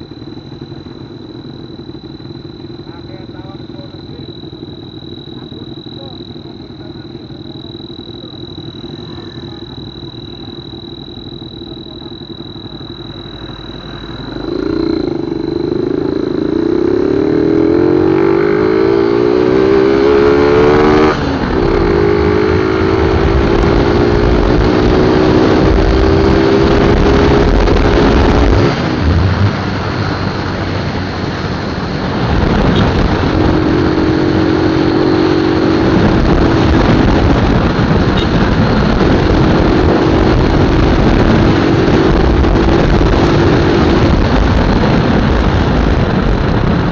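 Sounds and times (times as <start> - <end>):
exhaust turbo whistle: 0.0 - 16.7, 32.6 - 41.6
motorcycle engine idling and revving: 0.0 - 46.9.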